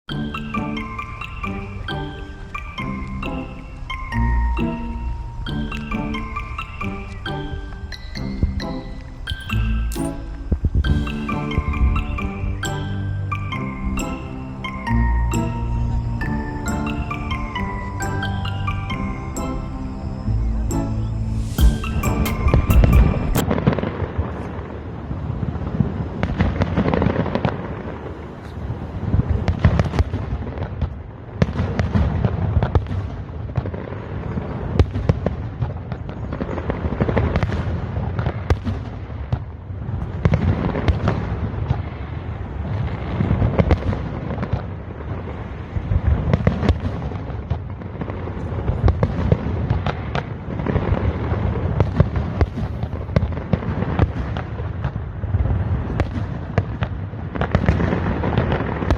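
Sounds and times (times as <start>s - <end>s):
low rumble: 8.2s - 13.9s
fireworks bursting: 28.9s - 58.9s.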